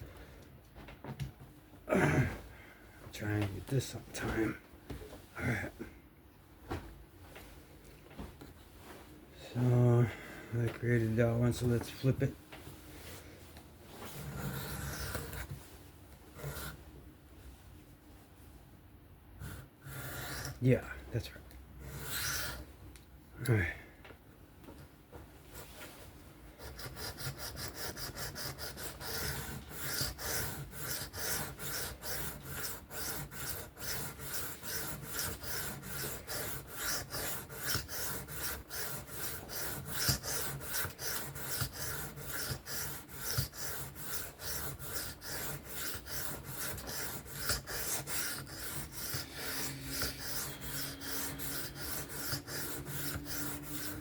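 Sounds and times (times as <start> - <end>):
knife rasping on sharpening stone: 21.9 - 22.6, 26.6 - 54.0.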